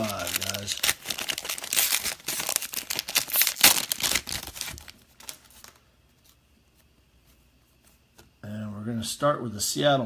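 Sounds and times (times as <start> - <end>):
wrapper tearing and crinkling: 0.0 - 5.8.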